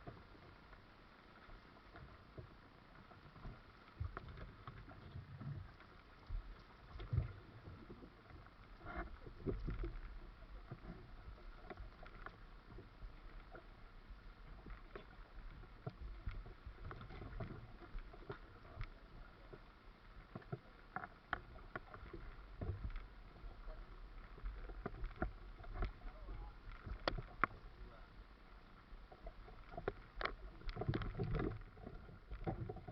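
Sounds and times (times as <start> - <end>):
boat engine low rumble: 0.0 - 32.9
water against hull: 0.0 - 32.9.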